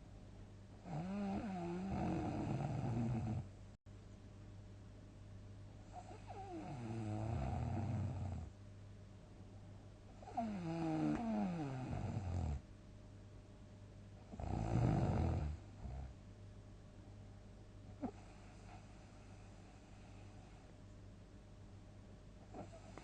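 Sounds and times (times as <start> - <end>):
person snoring loudly: 0.8 - 3.4, 6.1 - 8.4, 10.3 - 12.6, 14.3 - 15.6.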